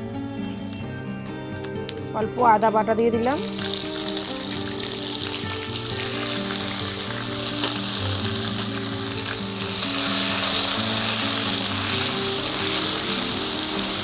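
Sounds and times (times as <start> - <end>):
soft background music: 0.0 - 14.0
spices sizzling in hot oil: 3.2 - 14.0.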